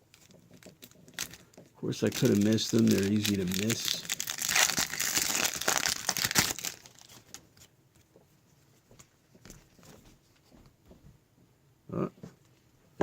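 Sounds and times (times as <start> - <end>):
cards rustling and ticking: 0.0 - 8.1
wrapper crinkling and tearing: 0.1 - 7.7.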